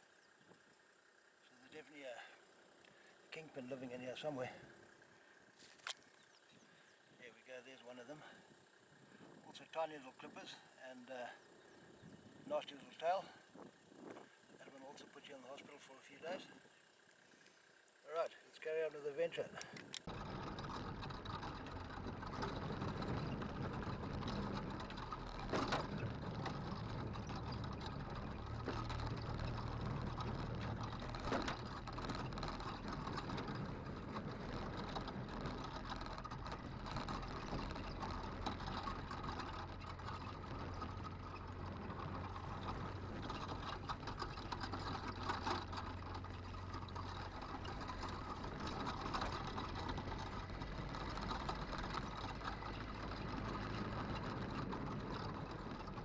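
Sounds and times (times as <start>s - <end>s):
vehicle engine running: 0.0s - 56.0s
rattling: 19.6s - 56.0s.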